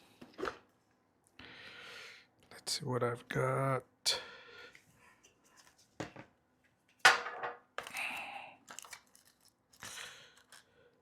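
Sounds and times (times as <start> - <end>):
rustling and knocking of parts: 5.2 - 8.0.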